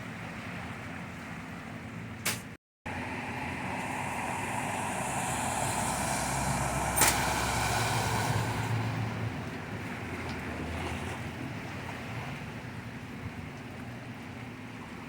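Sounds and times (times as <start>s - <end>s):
water spraying from tyres: 2.9s - 11.3s
vehicle engine hum: 2.9s - 15.0s.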